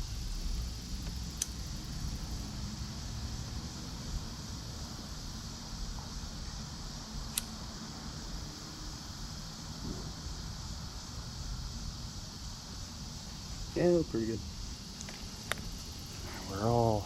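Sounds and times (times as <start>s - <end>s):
sharp click: 7.3s - 7.6s.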